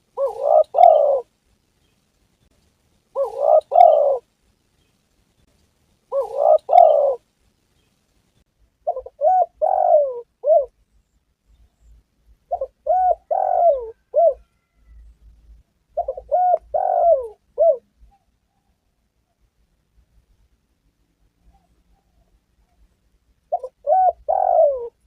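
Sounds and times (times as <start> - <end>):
dove cooing: 0.0 - 1.3, 3.1 - 4.3, 6.1 - 7.3, 8.8 - 10.8, 12.5 - 15.1, 15.9 - 18.8, 23.5 - 25.0.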